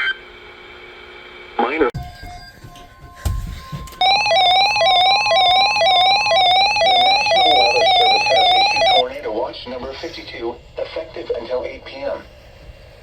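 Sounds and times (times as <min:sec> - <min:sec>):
buzzy electronic alert tone warbling: 0:04.0 - 0:09.0.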